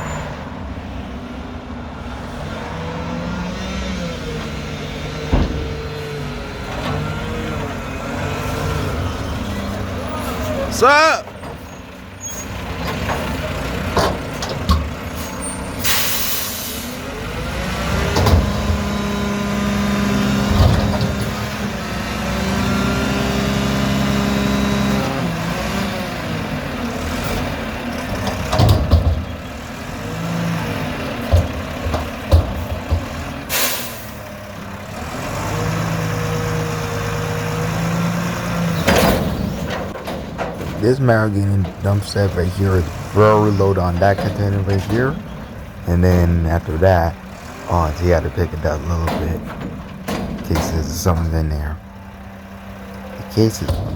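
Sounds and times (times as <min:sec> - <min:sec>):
garbage truck diesel engine revving: 0:02.1 - 0:53.9
air brake hissing: 0:15.2 - 0:17.0, 0:33.5 - 0:34.2.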